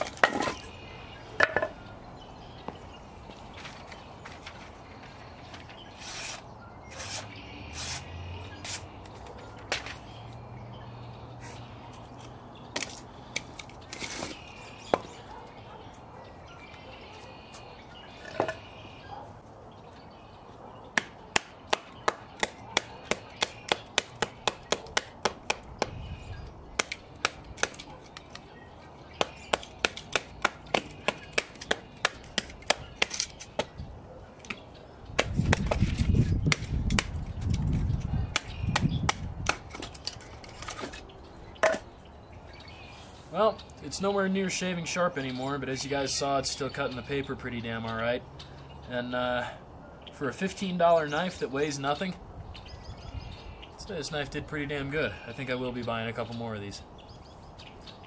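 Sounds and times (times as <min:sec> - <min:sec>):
knife chopping into wood: 0:21.0 - 0:26.0, 0:26.8 - 0:28.4, 0:29.2 - 0:33.8, 0:35.2 - 0:37.2, 0:38.3 - 0:40.0.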